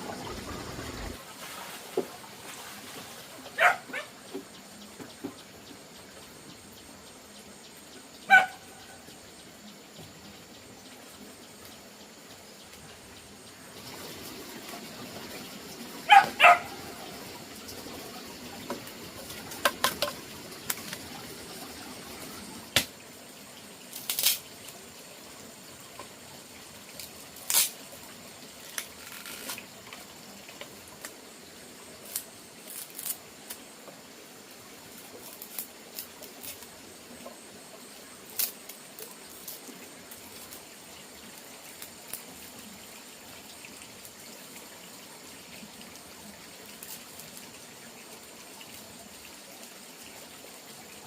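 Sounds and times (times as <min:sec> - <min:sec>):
water sounds: 0:00.0 - 0:51.0
dog barking: 0:03.6 - 0:04.1, 0:08.3 - 0:08.7, 0:16.1 - 0:16.8.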